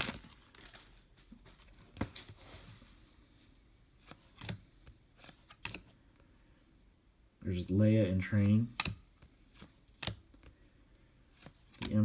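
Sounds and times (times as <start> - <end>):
cards clicking and tapping: 4.0 - 6.0, 8.3 - 10.6, 11.4 - 12.0.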